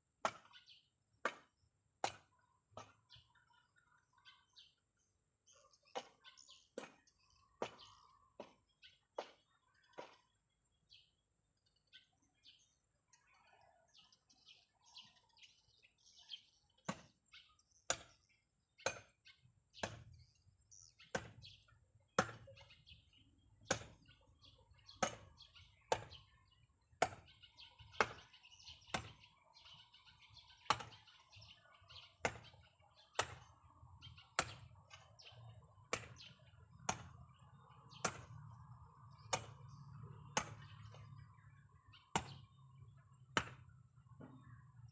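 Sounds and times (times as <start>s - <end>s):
small birds chirping: 0.0s - 44.9s
sharp chopping strikes: 21.1s - 21.6s, 22.2s - 22.6s, 23.6s - 24.1s, 25.9s - 26.3s, 27.0s - 27.3s, 27.9s - 29.3s, 33.2s - 33.5s, 34.3s - 35.0s, 35.9s - 37.2s, 37.9s - 38.5s, 39.1s - 41.3s, 42.0s - 42.5s, 43.3s - 43.7s.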